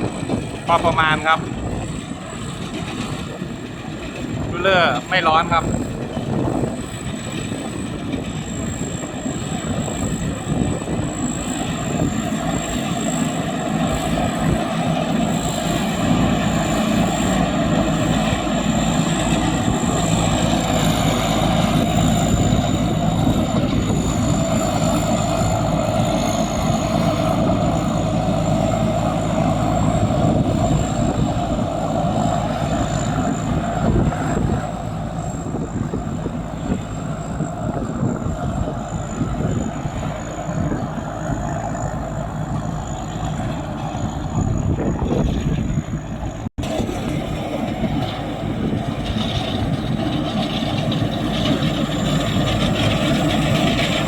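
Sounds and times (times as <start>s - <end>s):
diesel engine humming: 0.0s - 54.0s
high-pitched whine: 0.0s - 54.0s
threshing mechanism clatter: 42.5s - 54.0s.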